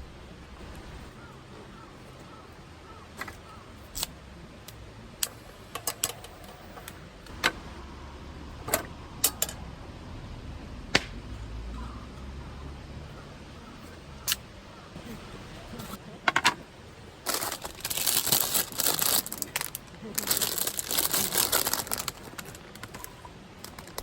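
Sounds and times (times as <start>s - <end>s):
low steady background noise: 0.0s - 24.0s.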